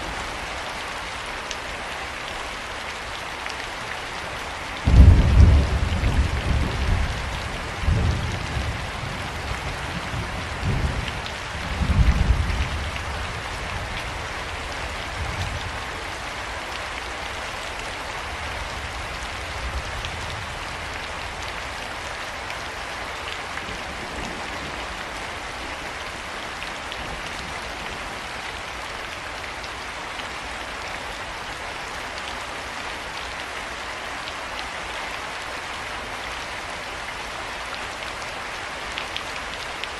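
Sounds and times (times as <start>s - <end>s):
steady rain falling: 0.0s - 39.9s
rolling thunder: 4.9s - 13.0s.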